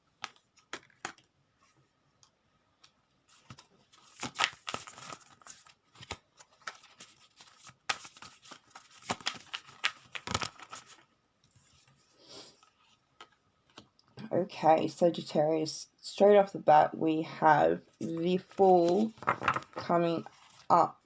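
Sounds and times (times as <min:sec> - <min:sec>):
cards being shuffled: 0:00.2 - 0:01.3, 0:02.8 - 0:13.9, 0:18.0 - 0:20.7.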